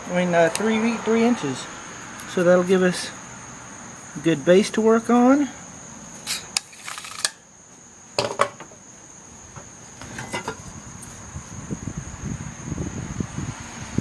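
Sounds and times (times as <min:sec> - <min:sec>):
insect trill: 0:00.0 - 0:14.0
lumber and tools knocking: 0:08.2 - 0:08.8, 0:09.5 - 0:10.6.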